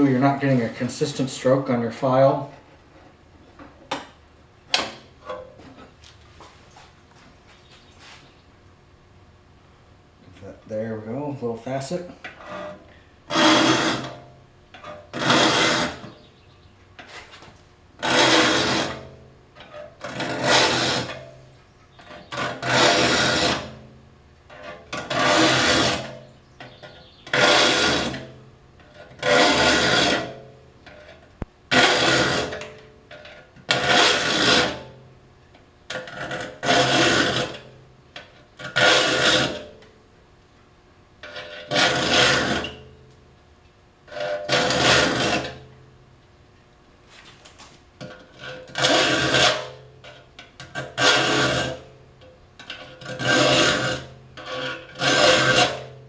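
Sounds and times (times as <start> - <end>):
saw file rasping on saw teeth: 12.4 - 14.2, 15.2 - 16.2, 18.0 - 19.0, 20.1 - 21.2, 22.2 - 23.8, 25.0 - 28.3, 29.2 - 30.4, 31.7 - 32.6, 33.7 - 34.8, 36.3 - 37.6, 38.7 - 39.6, 44.2 - 45.6, 50.8 - 51.8, 53.0 - 55.9.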